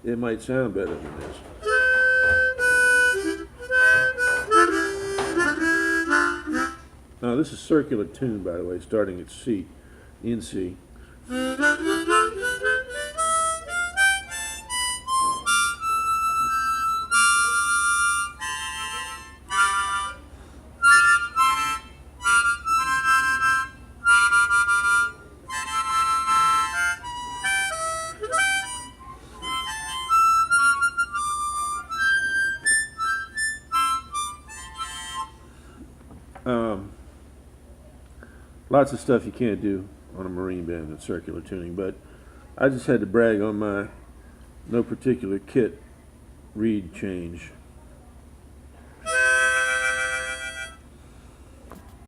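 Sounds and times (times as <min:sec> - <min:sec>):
harmonica playing: 0:01.6 - 0:06.9, 0:11.2 - 0:35.6, 0:49.0 - 0:50.9.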